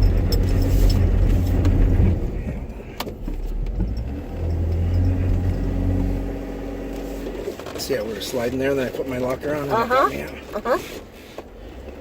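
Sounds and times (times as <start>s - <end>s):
off-road vehicle engine revving: 0.0s - 12.0s.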